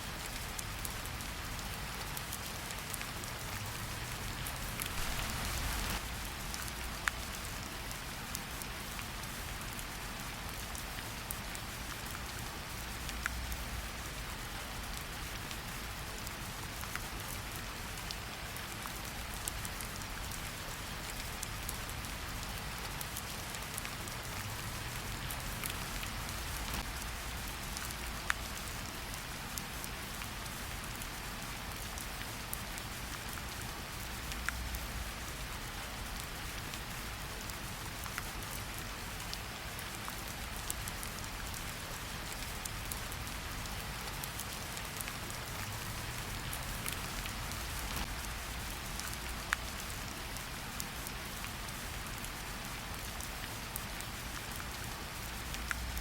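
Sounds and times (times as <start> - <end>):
steady rain falling: 0.0 - 56.0
close raindrop ticks: 0.1 - 56.0.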